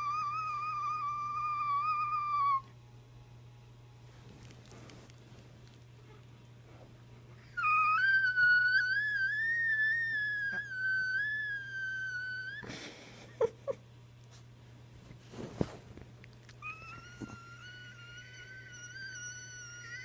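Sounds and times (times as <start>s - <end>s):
high-pitched wavering whistle tone: 0.0s - 2.7s, 7.4s - 12.6s, 16.6s - 20.0s.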